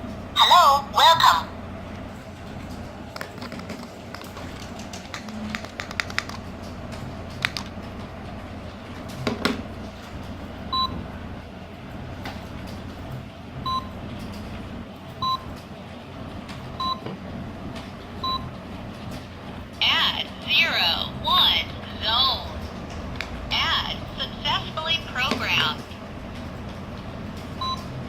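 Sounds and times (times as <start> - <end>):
clicks and taps: 3.2 - 7.8.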